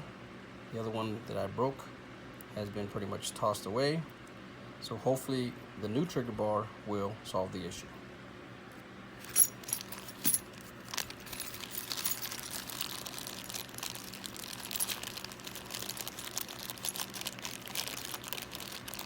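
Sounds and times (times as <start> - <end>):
small metal parts clicking and clinking: 9.2 - 19.0.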